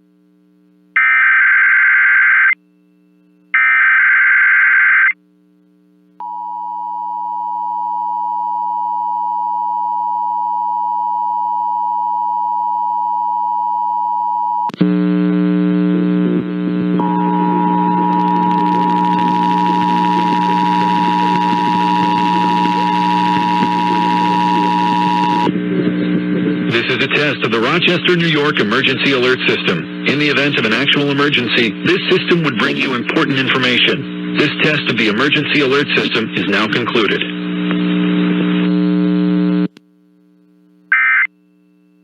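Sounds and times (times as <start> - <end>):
digital header tones: 17.0 - 25.5
two-tone attention signal: 17.0 - 25.5
loud multi-tone sound: 17.0 - 25.6.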